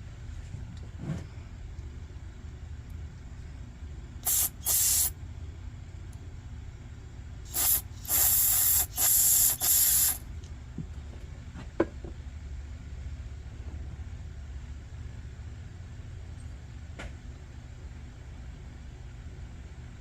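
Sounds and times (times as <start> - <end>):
spray hissing from a nozzle: 4.2 - 5.1, 7.5 - 10.2.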